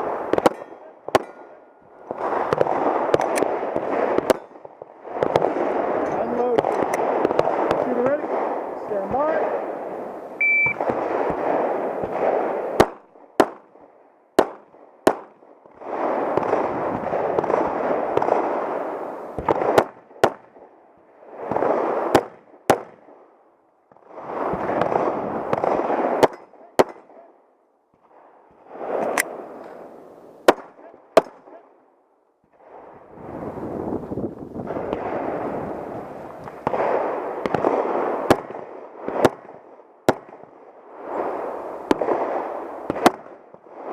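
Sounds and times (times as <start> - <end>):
pistol shots: 0.0 - 13.8, 14.4 - 20.6, 21.5 - 23.1, 24.0 - 27.3, 30.4 - 31.6, 36.4 - 40.6, 41.2 - 43.6.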